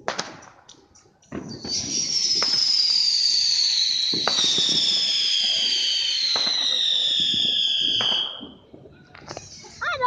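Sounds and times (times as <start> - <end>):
firework bang: 0.0 - 0.6, 1.3 - 9.4
firework whistle falling in pitch: 1.4 - 8.5.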